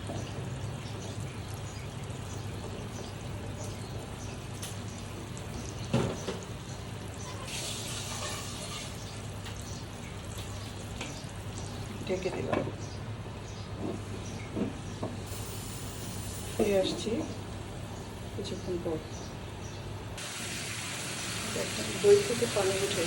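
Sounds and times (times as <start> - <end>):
chicken sizzling in a frying pan: 0.0 - 11.9, 15.3 - 16.9, 20.2 - 23.0.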